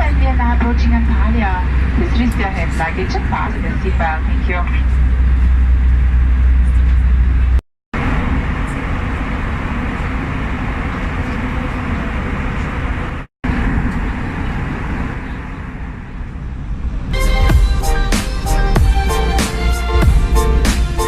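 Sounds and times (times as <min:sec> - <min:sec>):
deep hum: 0:00.0 - 0:08.9, 0:16.3 - 0:21.0
airplane cabin engine and air rush: 0:00.0 - 0:21.0.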